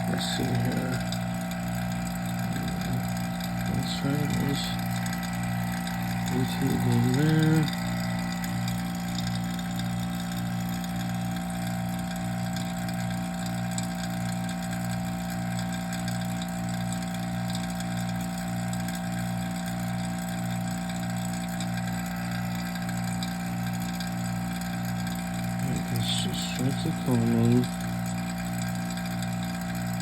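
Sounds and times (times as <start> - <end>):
vacuum pump motor hum: 0.0 - 30.0.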